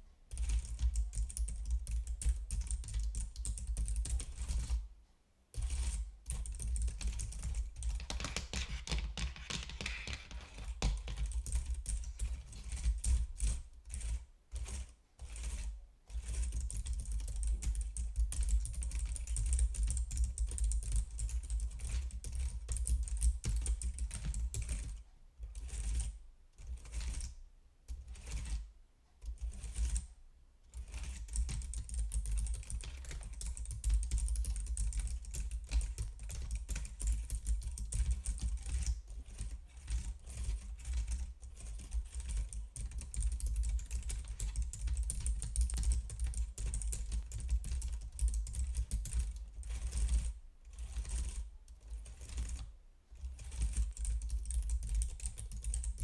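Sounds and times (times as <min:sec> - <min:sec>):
typing on computer keyboard: 0:00.3 - 0:04.8, 0:05.6 - 0:25.0, 0:30.8 - 0:56.0.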